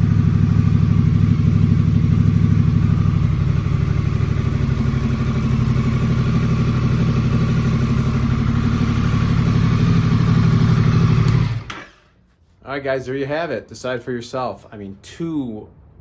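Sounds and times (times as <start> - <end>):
motorcycle engine idling: 0.0 - 11.8.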